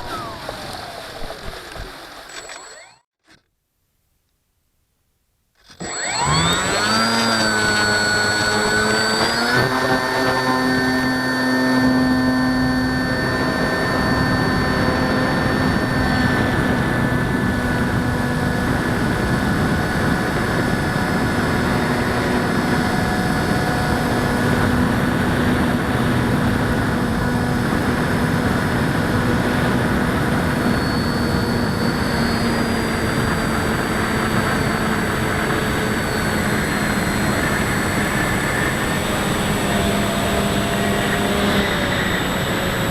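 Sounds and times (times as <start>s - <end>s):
electric motor and propeller whine: 0.0s - 3.1s, 5.6s - 42.9s.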